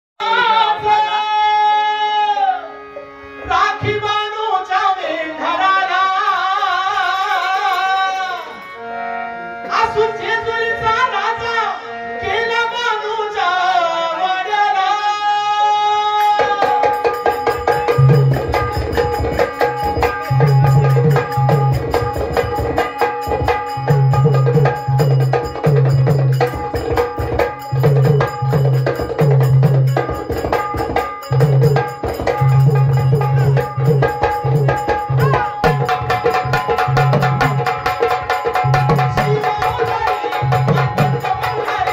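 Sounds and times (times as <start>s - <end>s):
folk melody with sliding notes: 0.2s - 14.4s, 15.8s - 41.9s
fast hand drum rhythm: 16.4s - 41.9s.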